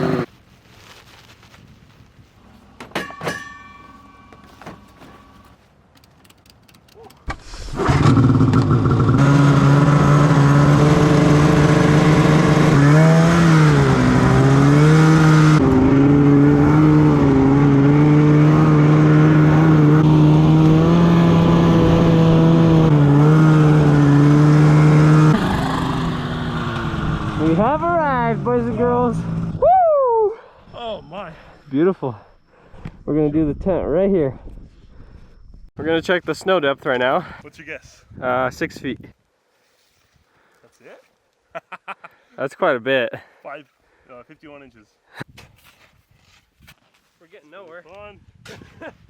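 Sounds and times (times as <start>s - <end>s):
snowmobile engine running: 0.0s - 0.3s, 7.7s - 29.5s
faint clicks: 5.9s - 7.3s.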